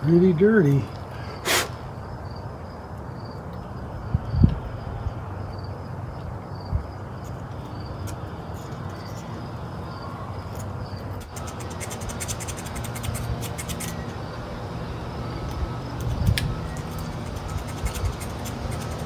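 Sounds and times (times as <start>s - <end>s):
steady low hum: 0.0s - 19.0s
tool scratching metal points: 11.2s - 14.1s, 16.7s - 19.0s.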